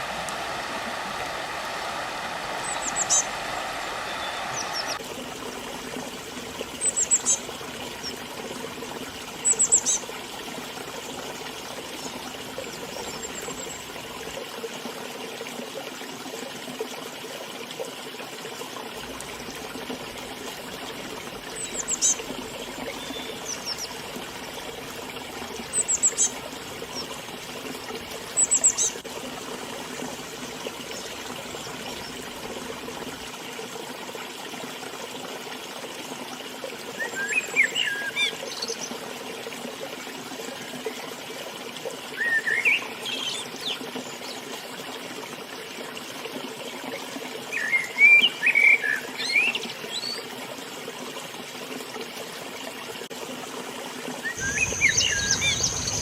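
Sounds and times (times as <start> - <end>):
river water running: 0.0 - 56.0
small bird chirping: 54.4 - 56.0.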